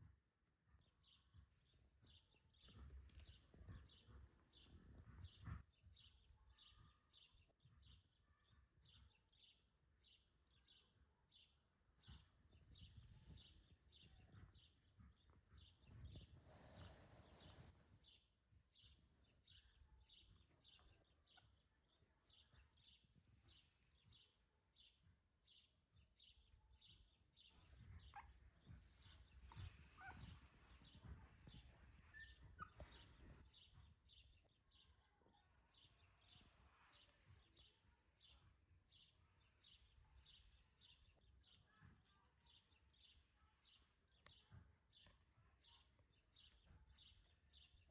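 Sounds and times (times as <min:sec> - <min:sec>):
faint high chirps: 0:26.9 - 0:38.5.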